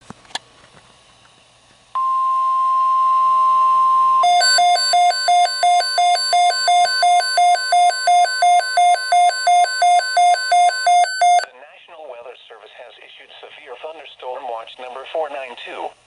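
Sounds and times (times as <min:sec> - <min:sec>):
pulsing beep: 0:02.0 - 0:11.5
steady warning alarm tone: 0:02.0 - 0:11.5.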